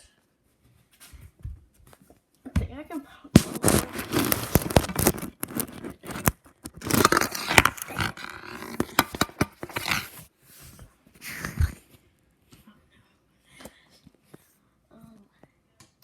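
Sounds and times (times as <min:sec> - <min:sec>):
device handling rustling: 0:03.4 - 0:10.2.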